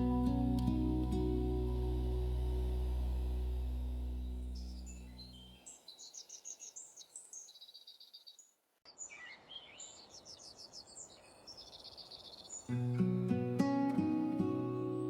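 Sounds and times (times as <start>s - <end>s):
songbirds chirping and trilling: 4.1s - 12.9s.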